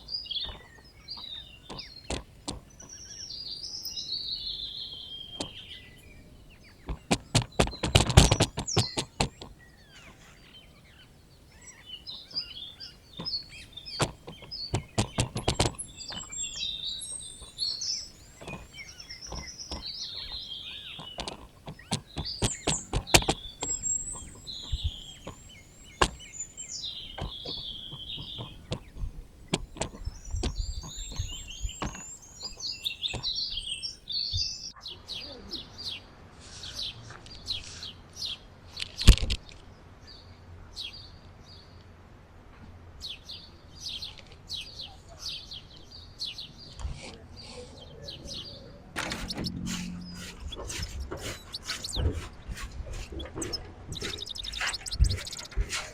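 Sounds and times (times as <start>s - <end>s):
small birds chirping: 0.0s - 42.0s, 42.7s - 55.9s
sharp knocks and taps: 0.4s - 3.0s, 6.8s - 9.6s, 13.2s - 17.7s, 18.4s - 33.4s.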